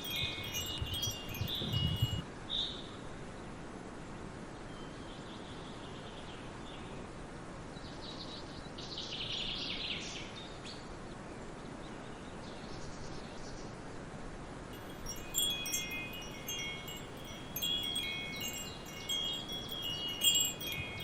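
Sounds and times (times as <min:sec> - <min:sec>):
small birds chirping: 0:00.0 - 0:02.2, 0:14.8 - 0:21.0
steady background hiss: 0:14.1 - 0:21.0.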